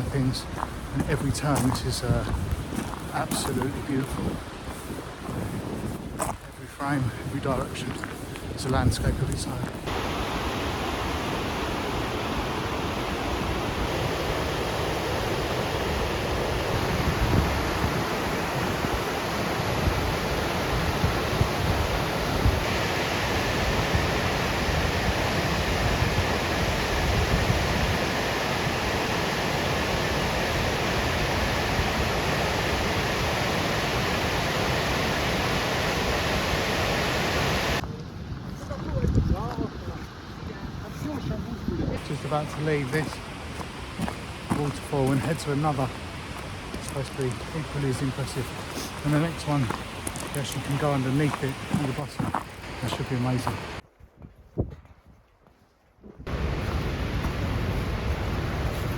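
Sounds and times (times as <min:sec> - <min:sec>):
waterfall rushing: 0:09.8 - 0:37.8, 0:42.0 - 0:53.8, 0:56.3 - 0:58.9.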